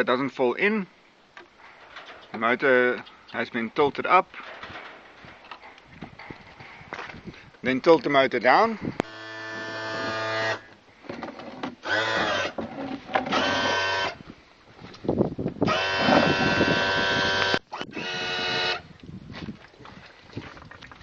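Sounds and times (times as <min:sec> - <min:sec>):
hydraulic pump whining: 0:09.0 - 0:14.2, 0:15.6 - 0:18.8.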